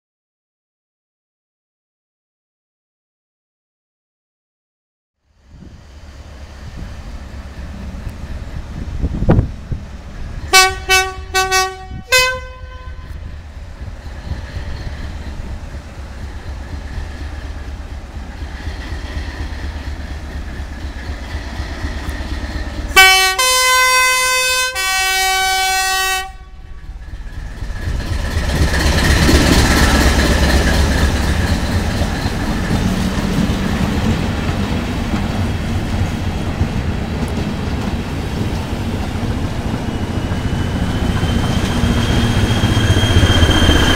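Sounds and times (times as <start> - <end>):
train passing rumble: 5.3 - 43.9
two-tone train horn: 10.5 - 13.2, 22.9 - 26.9.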